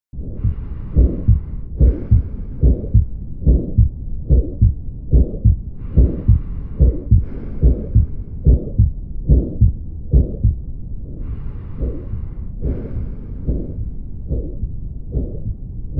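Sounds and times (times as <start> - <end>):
heartbeat thumps: 0.4 - 10.6, 11.8 - 15.9.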